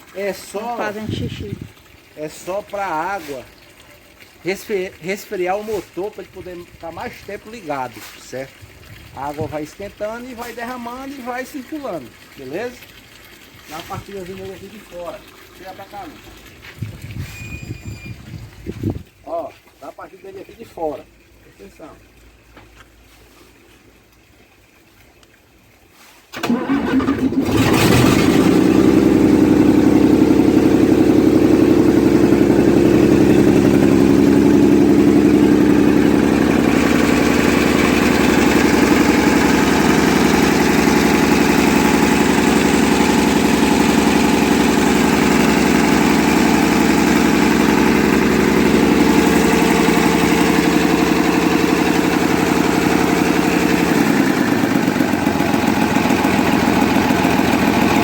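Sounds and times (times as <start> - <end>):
diesel truck engine idling: 26.7 - 58.0.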